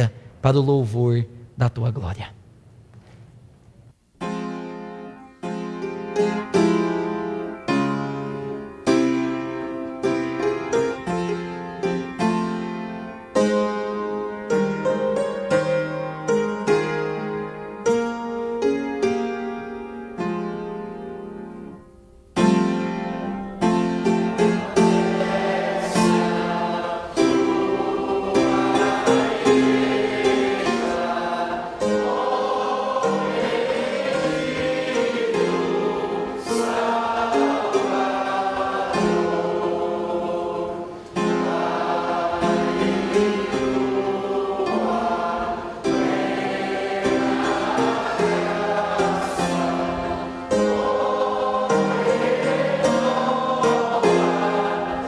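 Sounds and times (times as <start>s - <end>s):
congregation singing a hymn: 4.2s - 55.0s
piano accompaniment: 4.2s - 55.0s.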